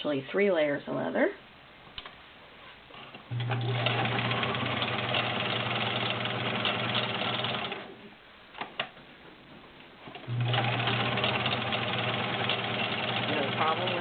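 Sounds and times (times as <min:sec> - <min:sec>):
sewing machine running: 0:03.3 - 0:07.9, 0:10.2 - 0:14.0.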